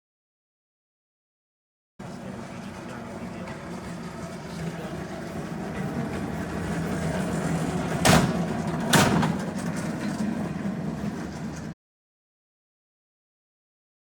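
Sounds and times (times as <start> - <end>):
steady machine hum: 2.0 - 11.8
loud knocks: 8.0 - 9.4.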